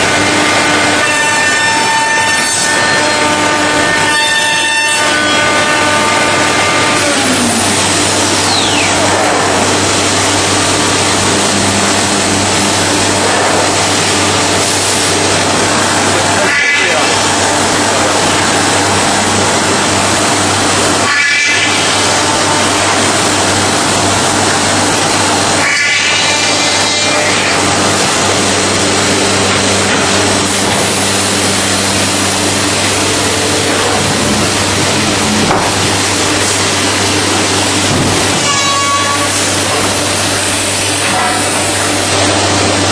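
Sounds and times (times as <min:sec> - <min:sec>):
woodworking machine running: 0:00.0 - 0:42.9
steady low hum: 0:27.3 - 0:42.9.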